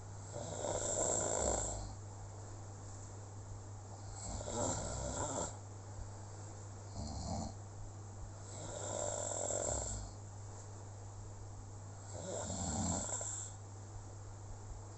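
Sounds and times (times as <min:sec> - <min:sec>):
steady low hum: 0:00.0 - 0:14.9
person snoring: 0:00.3 - 0:02.0, 0:04.0 - 0:05.6, 0:06.9 - 0:07.6, 0:08.5 - 0:10.2, 0:12.0 - 0:13.6.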